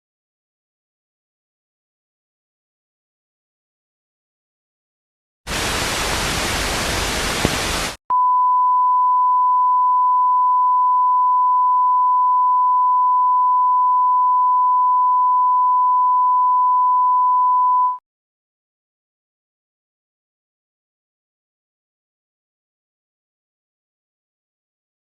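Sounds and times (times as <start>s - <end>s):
hissing tv static: 5.5s - 8.0s.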